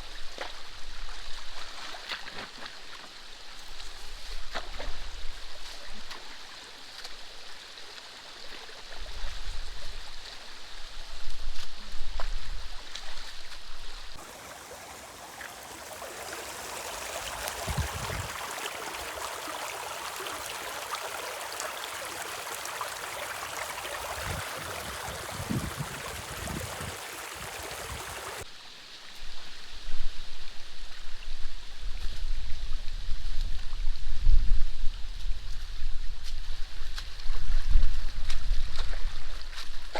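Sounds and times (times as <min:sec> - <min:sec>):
water rushing and gurgling: 0:14.2 - 0:28.4.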